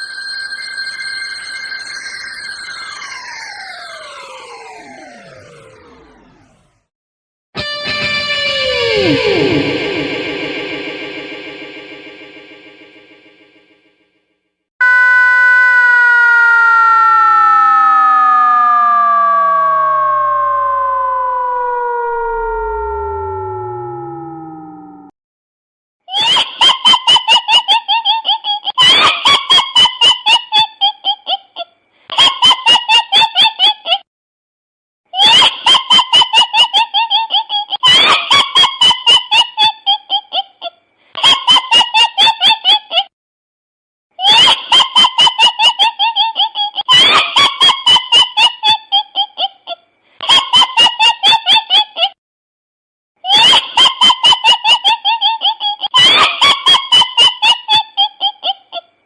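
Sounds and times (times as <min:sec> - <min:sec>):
cackling sound effect: 0:02.7 - 0:06.7, 0:07.6 - 0:12.2, 0:17.0 - 0:25.1, 0:26.1 - 0:34.0, 0:35.2 - 0:43.1, 0:44.2 - 0:52.2, 0:53.3 - 0:59.0.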